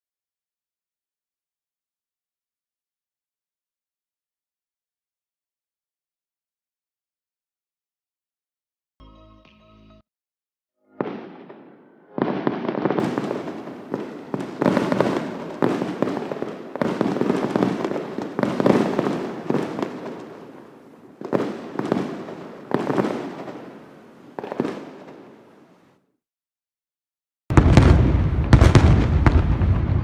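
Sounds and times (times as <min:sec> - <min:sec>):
fireworks bursting with rumble: 0:11.0 - 0:25.8, 0:27.5 - 0:30.0.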